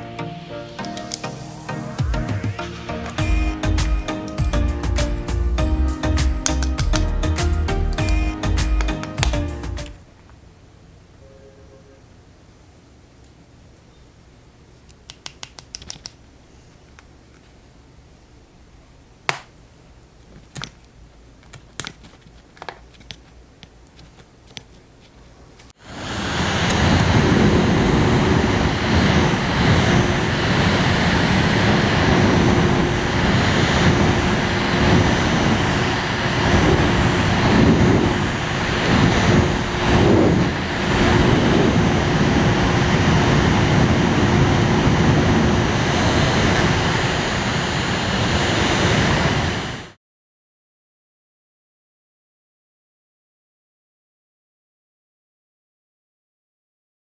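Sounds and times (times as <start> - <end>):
air conditioner fan rushing: 0.6 - 10.6, 25.8 - 49.9
sharp plastic clicks: 6.4 - 7.2, 7.9 - 10.0, 14.8 - 16.2, 19.3 - 19.6
faint steady hum: 16.0 - 50.0.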